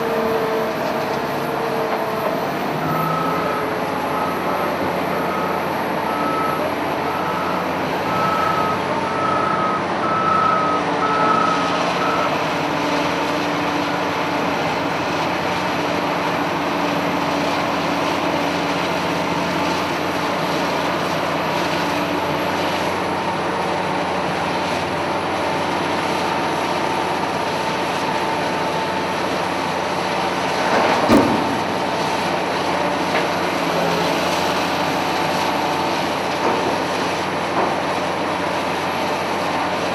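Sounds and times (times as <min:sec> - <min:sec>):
wheel loader diesel engine running: 0:00.0 - 0:39.9
reversing alarm beeping: 0:02.8 - 0:12.4.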